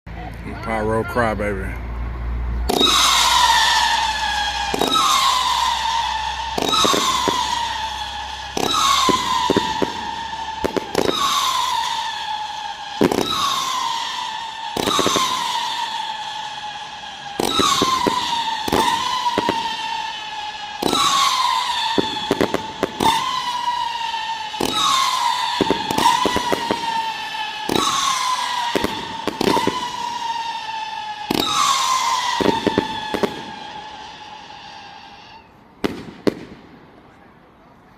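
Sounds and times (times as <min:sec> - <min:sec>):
whistling firework shots: 0:02.6 - 0:37.3
firework pops: 0:35.8 - 0:36.6.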